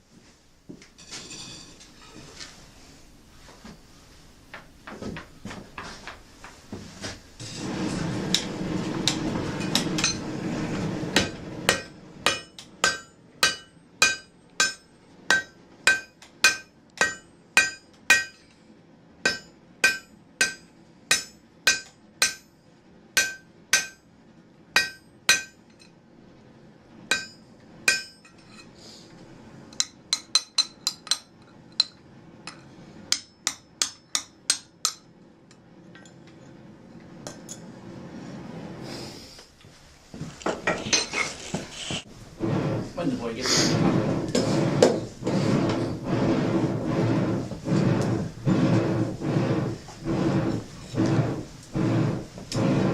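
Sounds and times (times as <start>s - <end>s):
hammer striking iron on anvil: 11.2s - 18.5s, 19.3s - 22.5s, 23.2s - 24.0s, 24.8s - 25.6s, 27.1s - 28.4s, 29.8s - 31.9s, 33.1s - 35.1s
steady rushing noise: 42.1s - 52.9s.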